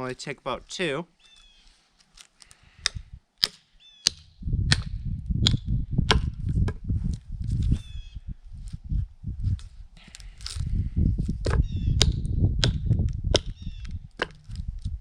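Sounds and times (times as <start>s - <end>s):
sledge striking wooden wedges: 2.8s - 6.9s, 11.4s - 14.7s
low rumble: 4.3s - 15.0s.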